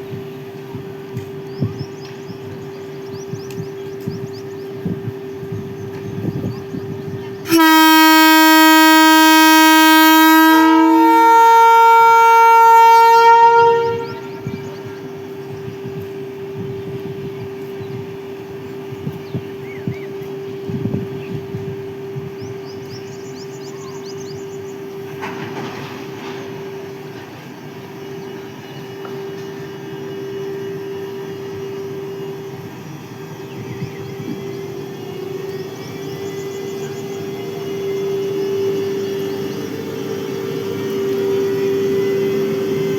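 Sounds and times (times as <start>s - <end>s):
electric locomotive hum: 0.0s - 42.9s
locomotive horn blast: 7.2s - 15.2s, 34.2s - 42.9s.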